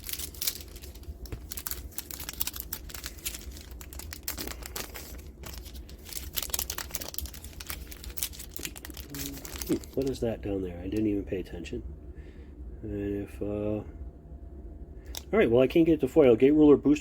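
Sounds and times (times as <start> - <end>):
foil wrappers crinkling: 0.0 - 10.2.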